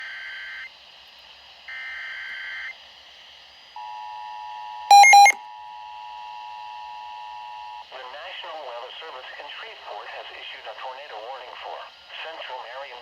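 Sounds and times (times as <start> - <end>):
digital header data burst: 4.9 - 5.4
loud electronic beeps: 4.9 - 5.4
steady attention tone: 4.9 - 5.4.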